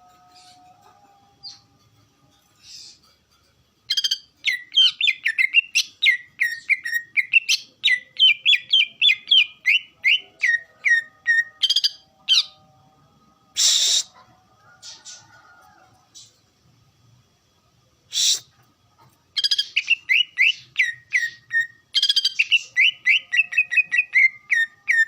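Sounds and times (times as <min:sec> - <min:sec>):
bird singing sliding whistles: 0:13.6 - 0:14.1.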